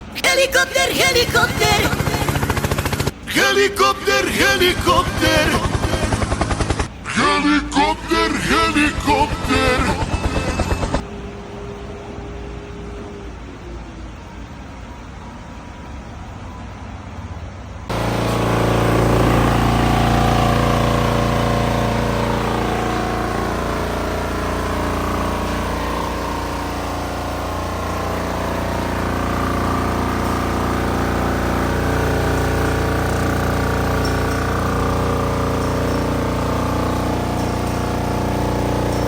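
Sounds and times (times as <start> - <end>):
car engine idling: 0.0 - 11.8, 17.9 - 39.0
heavy wavering hum: 4.0 - 14.5.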